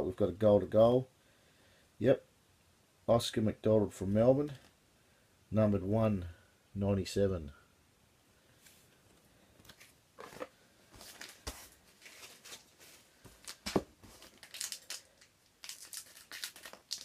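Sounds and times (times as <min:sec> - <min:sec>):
cards being handled: 0:09.6 - 0:17.0
plastic wrapper crinkling: 0:09.7 - 0:17.0.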